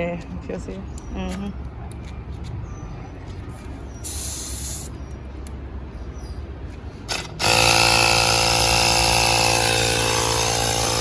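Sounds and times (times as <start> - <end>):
air compressor droning: 3.5 - 5.0, 6.8 - 11.0
short air hisses: 3.9 - 5.0.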